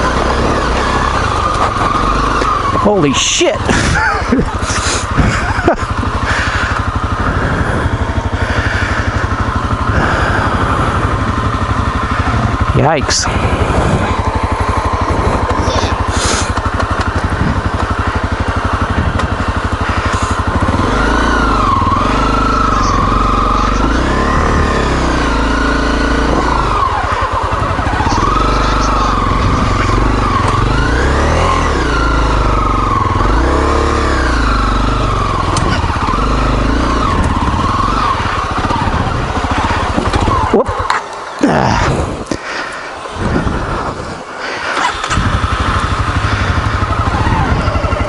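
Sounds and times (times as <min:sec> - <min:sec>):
motorcycle engine revving: 0:00.0 - 0:48.0.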